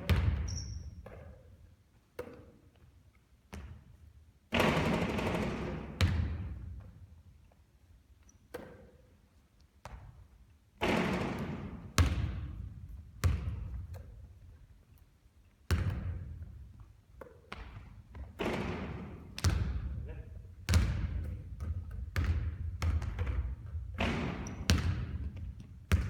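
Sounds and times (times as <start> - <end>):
basketball bouncing: 0.0 - 1.3, 3.5 - 3.9, 4.6 - 6.9, 10.8 - 14.2, 15.7 - 16.6, 17.2 - 26.0.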